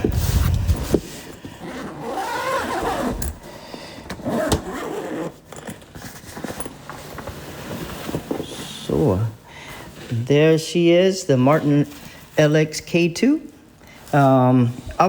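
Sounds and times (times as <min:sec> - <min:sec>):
fabric bag rustling and scraping: 0:00.0 - 0:03.5, 0:04.2 - 0:09.2.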